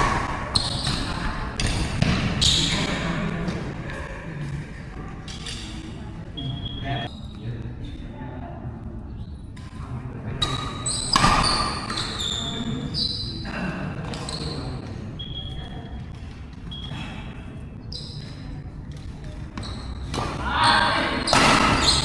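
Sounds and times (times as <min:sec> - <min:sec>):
shoes squeaking on court floor: 0:10.4 - 0:13.4, 0:14.1 - 0:16.0, 0:16.6 - 0:22.0
racket hitting shuttlecock: 0:10.6 - 0:12.0.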